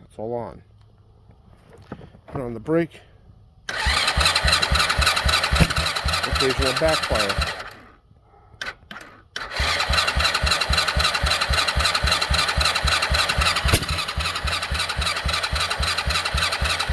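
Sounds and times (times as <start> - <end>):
engine cranking with electric starter: 3.6 - 8.0, 8.6 - 16.9
engine backfire pop: 4.5 - 6.2, 13.1 - 15.4.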